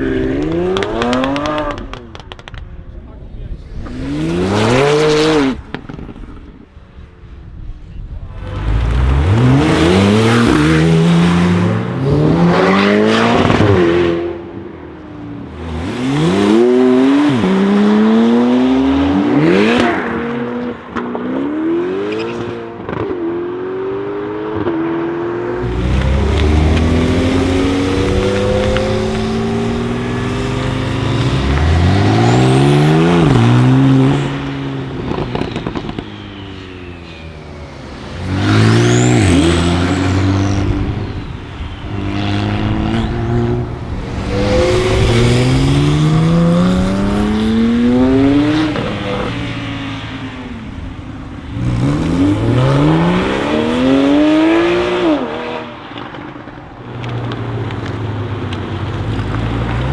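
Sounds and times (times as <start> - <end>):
car engine accelerating hard: 0.0 - 6.7, 8.2 - 59.9
sharp exhaust cracks: 25.4 - 54.3.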